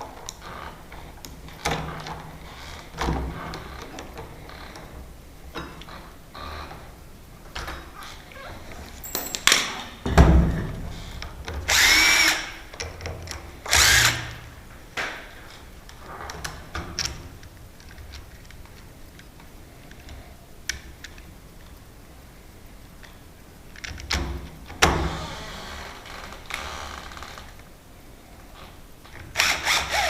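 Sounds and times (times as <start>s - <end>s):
power drill running: 11.7s - 12.6s, 13.7s - 14.4s, 29.4s - 30.0s.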